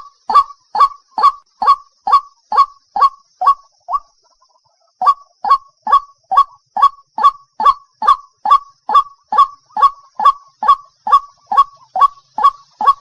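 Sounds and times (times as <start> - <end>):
waterhen honking calls: 5.0 - 13.0.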